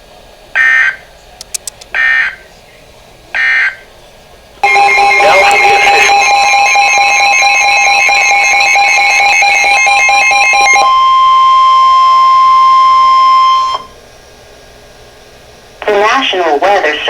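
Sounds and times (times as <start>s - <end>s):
steady high alarm tone: 2.0s - 2.4s, 3.4s - 3.8s, 4.6s - 14.0s
pulsing multi-pitch alert: 4.6s - 11.3s.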